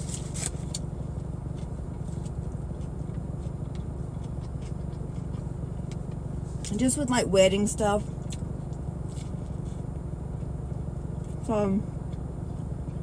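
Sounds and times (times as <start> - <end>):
car idling rumble: 0.0 - 13.0.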